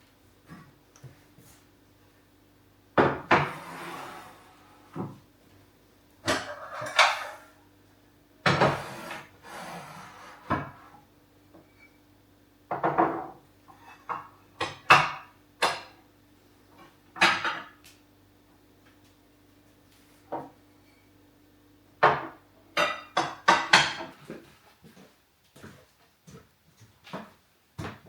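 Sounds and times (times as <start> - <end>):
dishes clattering on hard surfaces: 6.2 - 7.6, 12.7 - 16.0, 17.2 - 17.8, 22.0 - 24.2.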